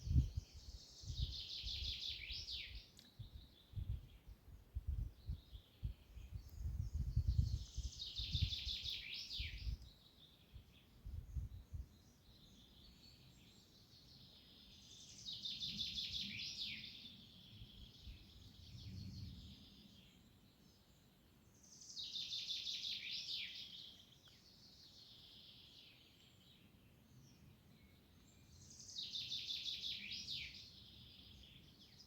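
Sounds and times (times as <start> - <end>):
songbird singing: 0.0 - 32.0
low gusty rumble: 6.3 - 7.7.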